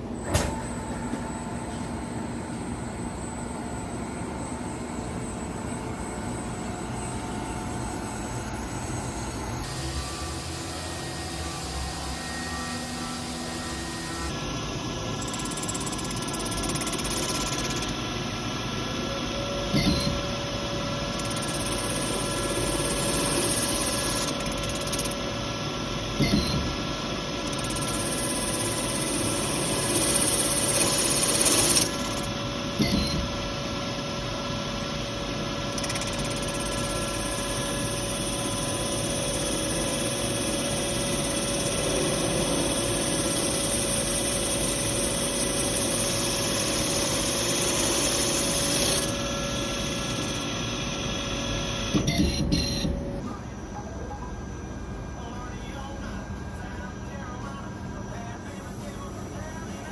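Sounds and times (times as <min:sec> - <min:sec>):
power tool whining: 0:05.1 - 0:18.1, 0:19.0 - 0:25.2, 0:27.4 - 0:33.4, 0:34.6 - 0:53.0.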